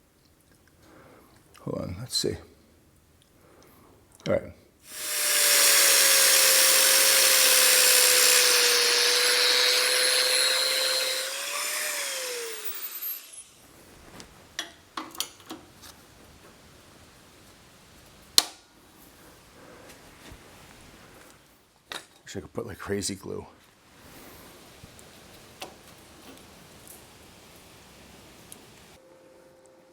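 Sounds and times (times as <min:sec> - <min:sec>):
power tool running on steel: 0:04.9 - 0:13.6.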